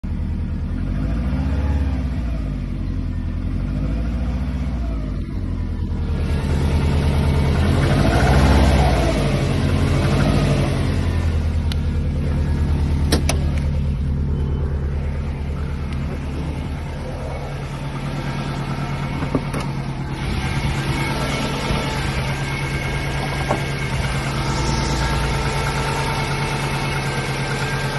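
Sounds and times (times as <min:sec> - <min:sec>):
car engine revving and idling: 0:00.0 - 0:27.9
engine knocking: 0:25.4 - 0:27.9.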